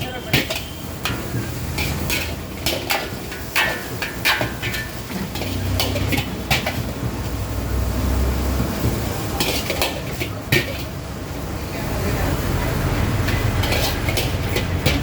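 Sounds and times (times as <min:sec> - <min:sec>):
metal spatula scraping a pan: 0:00.0 - 0:07.4, 0:09.3 - 0:11.0, 0:13.0 - 0:15.0.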